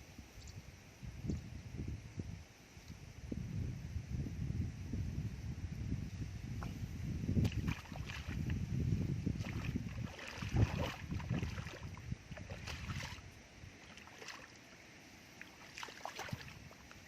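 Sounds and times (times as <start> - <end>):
splashes and clicks: 7.4 - 8.4, 9.4 - 13.2, 13.9 - 14.6, 15.4 - 17.0
muddy water sloshing: 7.4 - 8.6, 9.2 - 17.0.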